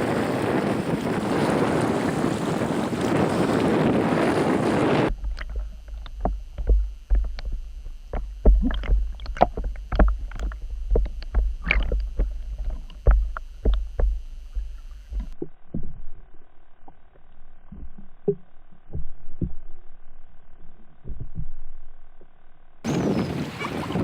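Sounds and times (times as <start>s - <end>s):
wind and waves: 0.0s - 16.0s, 22.8s - 24.0s
underwater rumble: 0.0s - 24.0s
underwater knocks and clicks: 5.1s - 22.4s.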